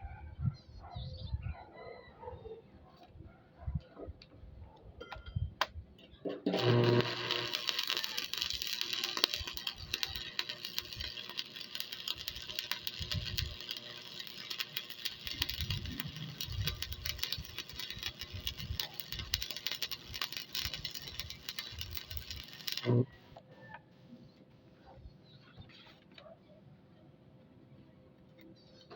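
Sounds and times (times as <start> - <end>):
arc welding crackling sizzle: 6.2 - 23.4.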